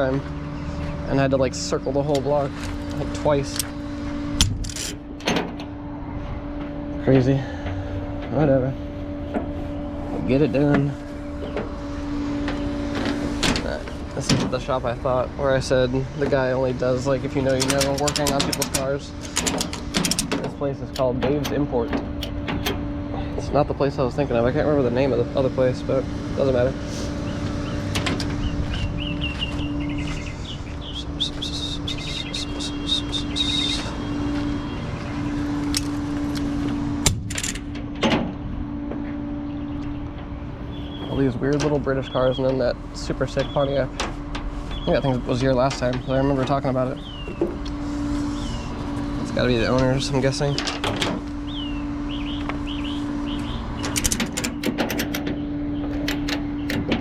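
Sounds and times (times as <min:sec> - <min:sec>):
small birds chirping: 0:00.0 - 0:04.3, 0:07.0 - 0:37.0, 0:39.0 - 0:57.0
steady low hum: 0:00.0 - 0:57.0
truck engine idling: 0:00.0 - 0:57.0
sharp clicks: 0:17.5 - 0:22.8, 0:53.4 - 0:57.0.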